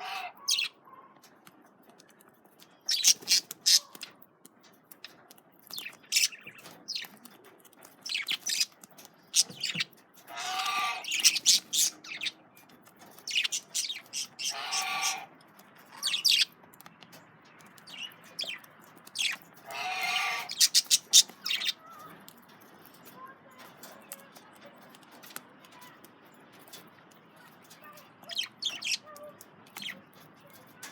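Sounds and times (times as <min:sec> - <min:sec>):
budgerigars chirping: 0:00.0 - 0:00.8, 0:02.8 - 0:04.1, 0:05.7 - 0:07.1, 0:08.0 - 0:12.4, 0:13.2 - 0:15.3, 0:15.9 - 0:16.5, 0:17.7 - 0:21.8, 0:28.2 - 0:30.0
harsh budgerigar calls: 0:00.0 - 0:00.8, 0:02.9 - 0:04.1, 0:06.1 - 0:07.1, 0:08.1 - 0:12.4, 0:13.2 - 0:15.3, 0:15.9 - 0:16.5, 0:17.8 - 0:21.8, 0:28.2 - 0:29.2.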